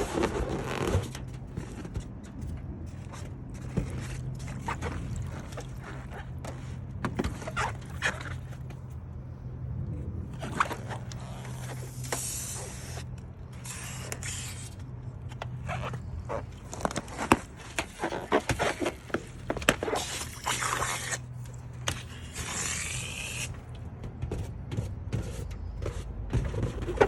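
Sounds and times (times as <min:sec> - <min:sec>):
balloons rubbing and scraping: 0:00.0 - 0:01.9, 0:10.2 - 0:14.9, 0:15.5 - 0:23.8.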